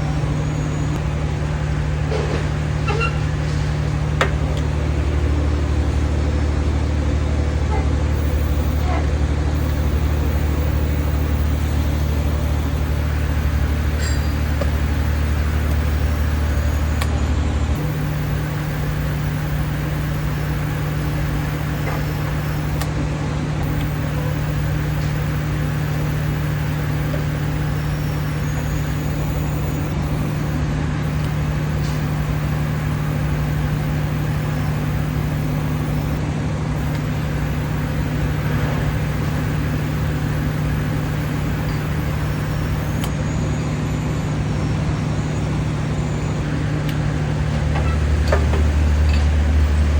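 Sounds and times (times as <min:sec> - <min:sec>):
diesel engine running: 0:08.1 - 0:23.0, 0:23.6 - 0:43.1.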